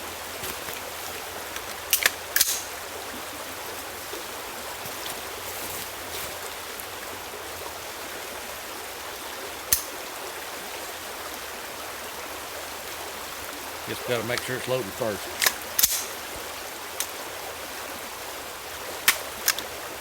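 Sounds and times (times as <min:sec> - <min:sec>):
steady outdoor hiss: 0:00.0 - 0:20.0
rifle mechanism clicks: 0:01.6 - 0:02.7, 0:15.4 - 0:16.2, 0:19.1 - 0:19.7.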